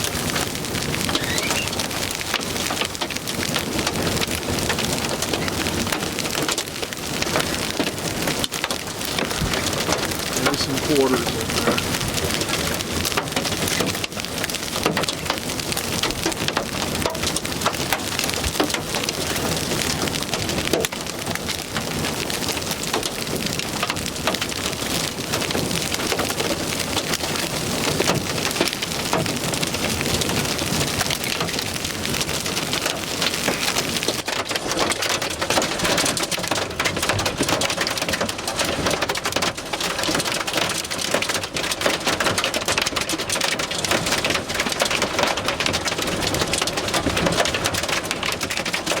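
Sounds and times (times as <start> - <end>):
hail and rain pelting: 0.0 - 49.0.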